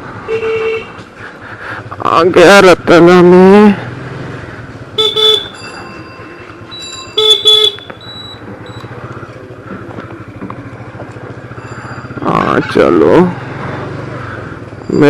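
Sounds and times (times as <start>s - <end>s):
engine humming: 0.0s - 15.0s
vehicle horns honking: 0.3s - 1.0s, 4.9s - 5.7s, 6.8s - 8.1s.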